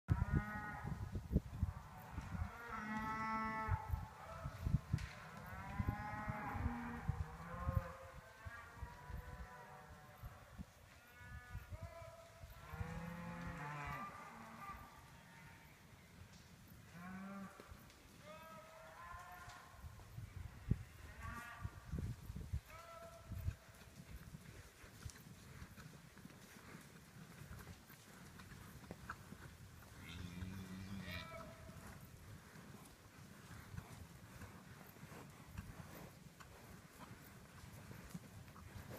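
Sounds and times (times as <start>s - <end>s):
hooves thudding on ground: 0.1s - 38.9s
cows mooing: 2.2s - 3.9s, 12.6s - 15.4s, 30.0s - 31.5s.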